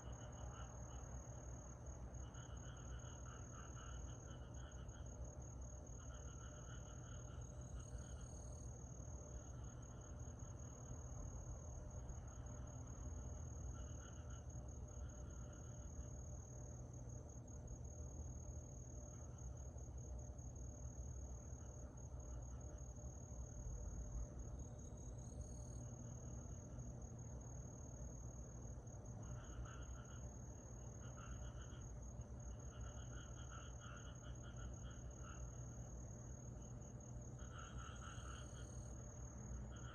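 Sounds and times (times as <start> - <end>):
crickets trilling: 0.0 - 39.9
pulsed insect calls: 5.9 - 8.6, 27.5 - 39.9.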